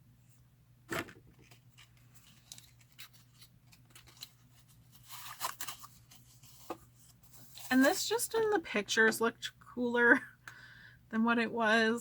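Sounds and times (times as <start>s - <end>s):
rustling scrapes: 1.7s - 8.1s.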